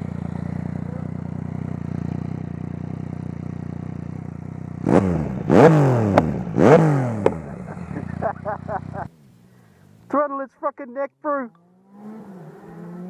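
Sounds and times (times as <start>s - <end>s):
motorcycle engine idling and revving: 0.0s - 10.1s, 11.5s - 13.0s.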